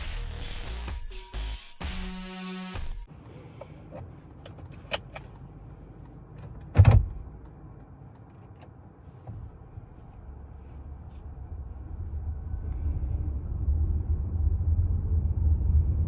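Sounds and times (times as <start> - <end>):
low steady rumble: 3.0 - 16.0
car door shutting thump: 6.7 - 7.2.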